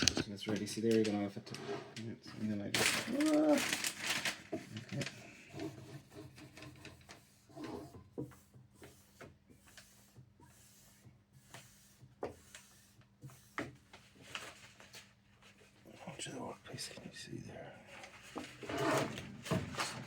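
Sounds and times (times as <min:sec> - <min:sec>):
vinyl film rubbing and crinkling: 0:00.0 - 0:08.0, 0:13.9 - 0:16.9, 0:17.9 - 0:20.0.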